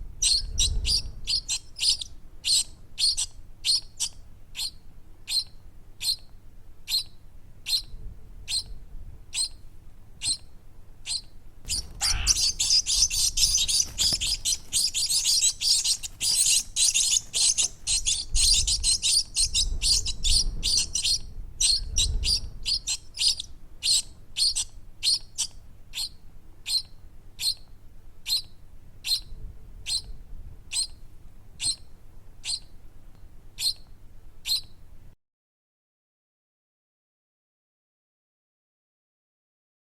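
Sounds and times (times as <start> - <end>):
baby bird chirping: 0.2 - 6.3, 6.9 - 7.9, 8.5 - 8.7, 9.3 - 9.6, 10.2 - 10.5, 11.1 - 30.1, 30.7 - 31.0, 31.6 - 32.8, 33.6 - 34.8.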